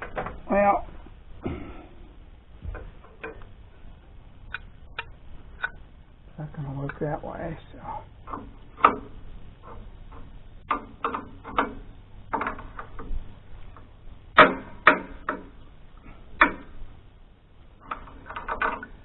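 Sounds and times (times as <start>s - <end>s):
low steady hum: 0.0s - 19.0s
wrench clanking and clicking: 8.3s - 13.1s, 17.8s - 19.0s.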